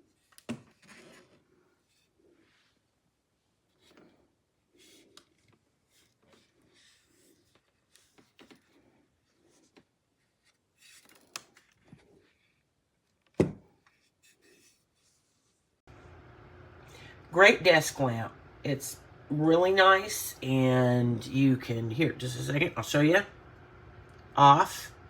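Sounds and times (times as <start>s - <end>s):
rustling and handling noises: 0.0s - 15.8s
small scrapes and clicks: 4.8s - 13.2s.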